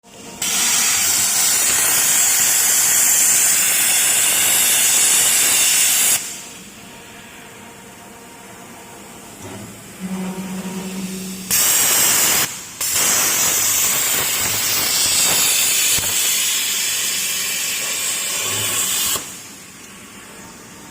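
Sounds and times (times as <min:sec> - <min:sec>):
plasma cutting torch hissing: 0:00.4 - 0:06.4, 0:11.1 - 0:19.5
machine low hum: 0:06.4 - 0:12.8.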